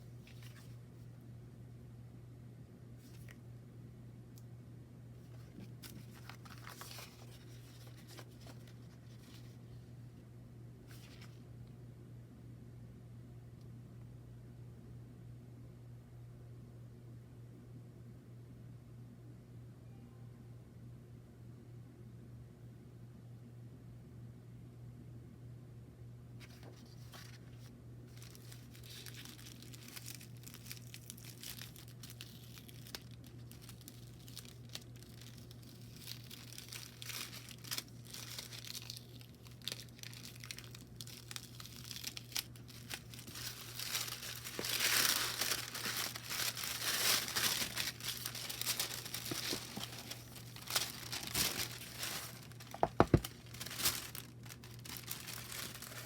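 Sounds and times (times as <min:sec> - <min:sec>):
wrapping crinkling and tearing: 0:00.0 - 0:00.8, 0:05.2 - 0:09.6, 0:10.9 - 0:11.4, 0:26.4 - 0:56.0
faint steady hum: 0:00.0 - 0:56.0.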